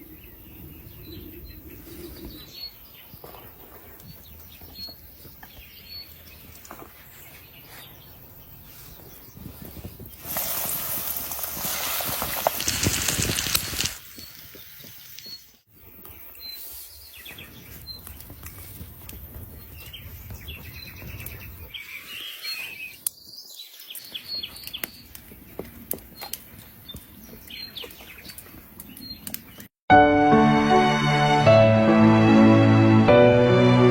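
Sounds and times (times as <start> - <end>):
birds chirping: 0.0 - 10.2
outdoor background noise: 0.0 - 29.8.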